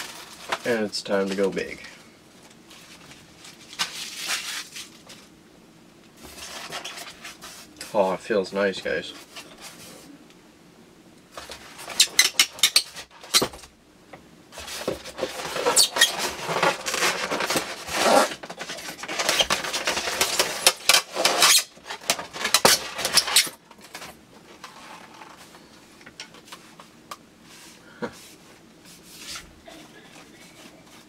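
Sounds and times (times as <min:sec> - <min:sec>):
plastic wrapping rustling: 0:00.0 - 0:05.4, 0:14.5 - 0:26.9.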